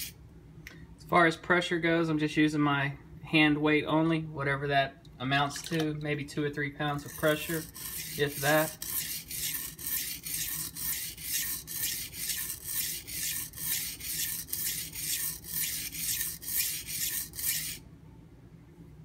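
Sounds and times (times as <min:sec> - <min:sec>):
knife scraping on whetstone: 0:06.9 - 0:17.8.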